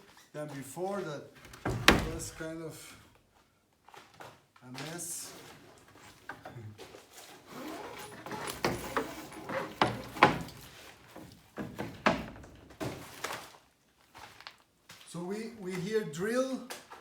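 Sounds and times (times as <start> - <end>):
wooden knocks and clunks: 1.4 - 2.6, 8.2 - 13.1.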